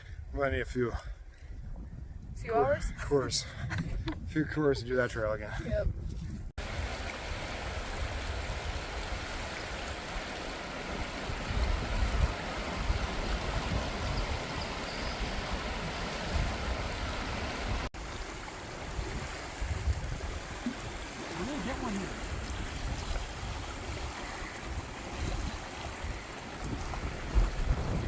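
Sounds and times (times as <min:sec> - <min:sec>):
river water rushing: 0:06.6 - 0:28.0.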